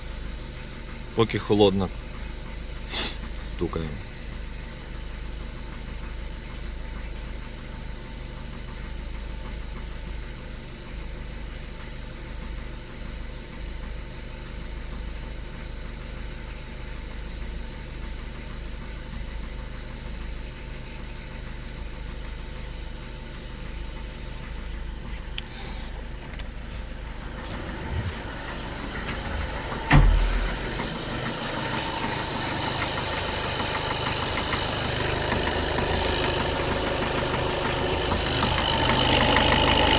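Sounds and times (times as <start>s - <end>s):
diesel engine idling with knock: 0.0s - 39.9s
loud thump: 26.7s - 34.1s.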